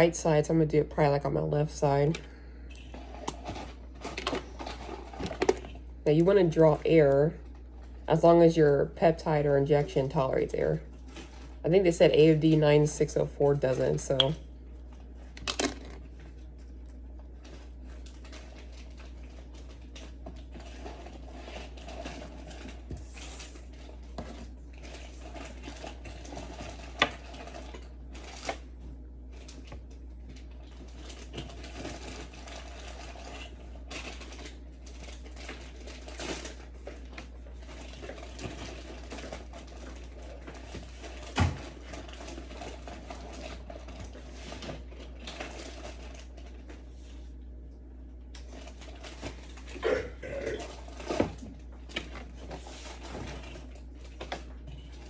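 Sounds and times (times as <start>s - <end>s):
low hum: 49.7s - 51.2s.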